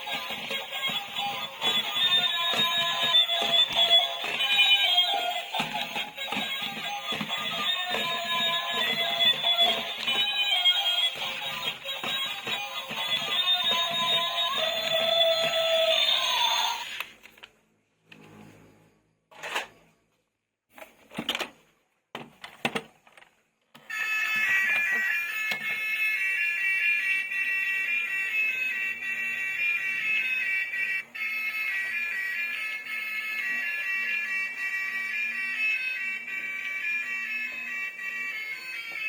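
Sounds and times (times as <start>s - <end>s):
music: 0.0s - 17.0s.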